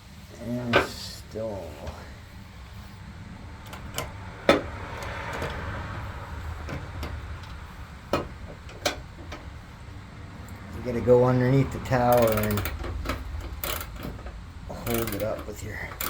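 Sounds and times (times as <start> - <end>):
metallic clicks of hand tools: 12.1 - 14.2, 14.8 - 16.0.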